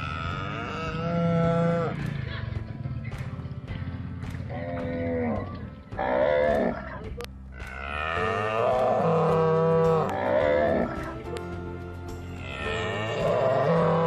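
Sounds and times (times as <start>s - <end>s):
cows mooing: 0.0s - 2.3s, 4.5s - 7.0s, 7.6s - 11.1s, 12.3s - 14.0s.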